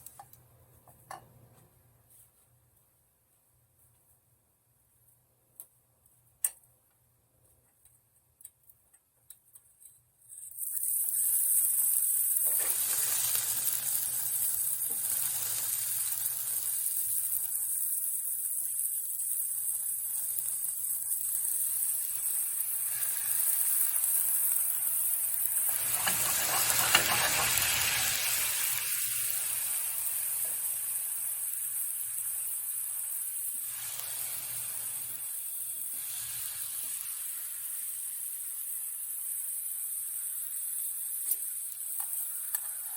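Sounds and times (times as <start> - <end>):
chicken sizzling in a frying pan: 10.6 - 42.9.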